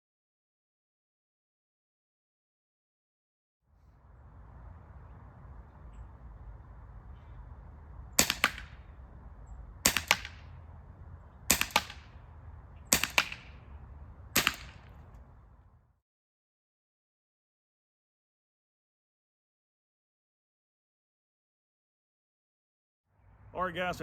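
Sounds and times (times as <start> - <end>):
low rumble of wind: 3.7 - 16.0, 23.1 - 24.0
airsoft pistol shots: 8.2 - 8.9, 9.8 - 10.5, 11.5 - 12.2, 12.9 - 13.6, 14.4 - 15.0.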